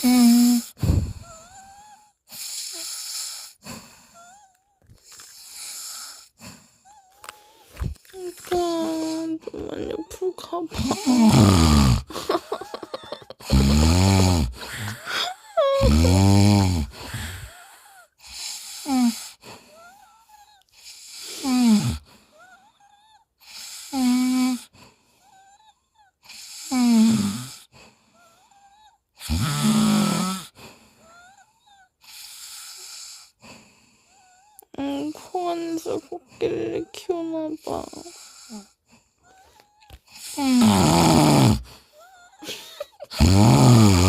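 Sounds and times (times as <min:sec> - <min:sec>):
man snoring with squeaky whines: 0:00.0 - 0:03.6, 0:05.2 - 0:07.7, 0:10.8 - 0:34.7, 0:37.8 - 0:44.0.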